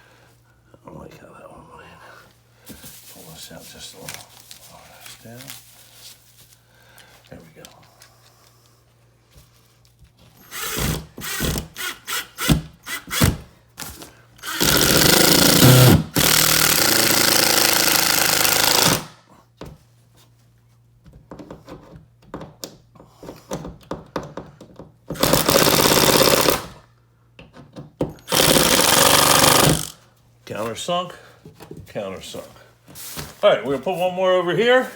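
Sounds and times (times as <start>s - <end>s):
power drill driving screws: 10.4s - 13.4s, 14.4s - 19.1s, 25.1s - 26.8s, 28.2s - 30.0s.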